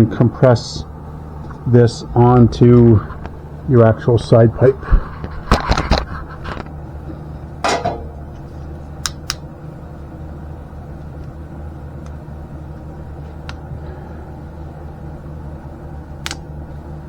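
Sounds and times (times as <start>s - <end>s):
steady low hum: 0.0s - 17.0s
metal clanks: 7.6s - 8.2s.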